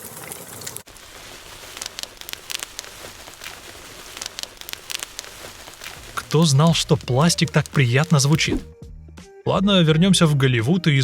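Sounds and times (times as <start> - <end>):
bubble wrap popping: 0.9 - 8.7.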